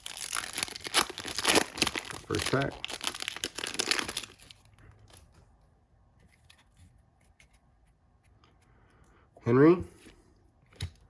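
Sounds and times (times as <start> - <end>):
wrapper tearing and crinkling: 0.0 - 4.6.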